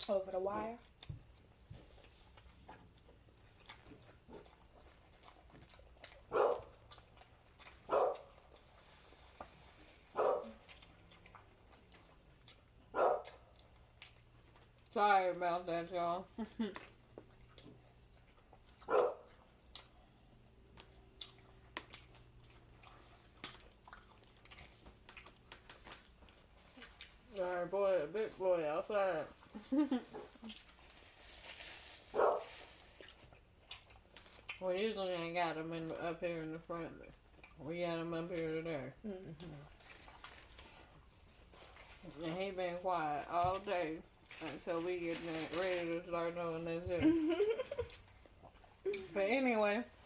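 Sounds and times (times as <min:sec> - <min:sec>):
person chewing: 0:00.8 - 0:15.0, 0:16.7 - 0:27.3, 0:30.2 - 0:34.7, 0:37.0 - 0:37.6, 0:39.3 - 0:42.0
large dog barking: 0:06.3 - 0:06.7, 0:07.9 - 0:08.3, 0:10.2 - 0:10.5, 0:12.9 - 0:13.3, 0:18.9 - 0:19.3.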